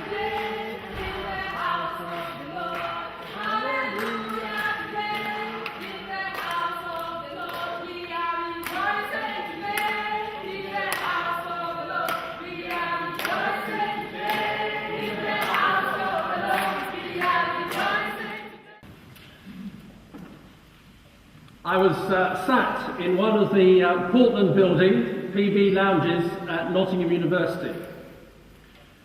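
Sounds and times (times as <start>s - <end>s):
choir singing in reverberant hall: 0.0s - 19.6s.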